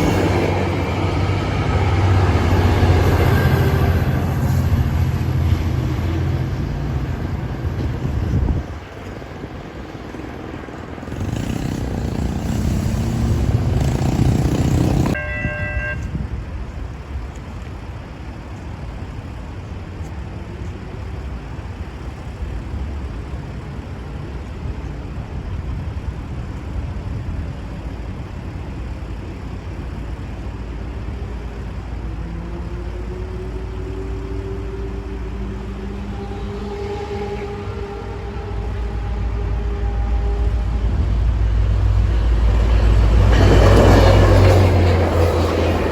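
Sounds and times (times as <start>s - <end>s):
locomotive rumble: 0.0s - 45.9s
train horn: 0.9s - 4.8s, 11.1s - 16.2s, 33.0s - 41.4s
loud rushing noise: 10.9s - 15.2s
rising horn-like tone: 32.2s - 41.5s.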